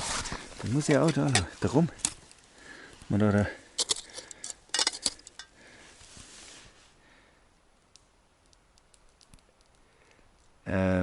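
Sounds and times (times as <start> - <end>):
faint rustling: 0.0 - 7.4
small quiet clicks: 7.8 - 10.6.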